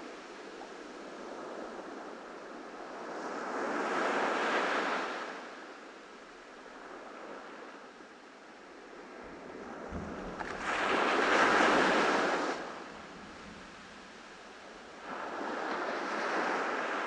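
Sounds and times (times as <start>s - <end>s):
ocean waves breaking: 8.7s - 17.0s.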